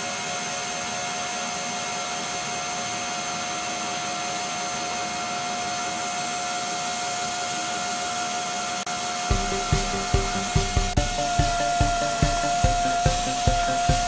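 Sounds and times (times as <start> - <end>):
machine motor running: 9.3 - 14.0.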